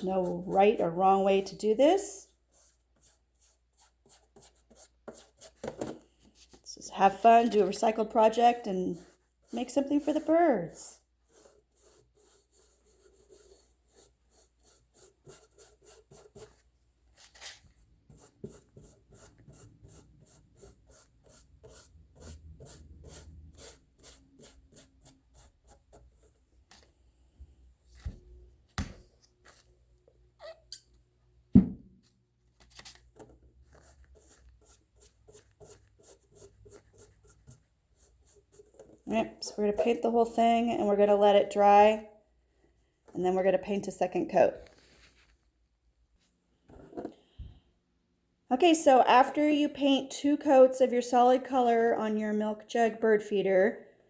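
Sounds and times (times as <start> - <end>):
paintbrush scraping plastic jug: 33.2 - 40.8.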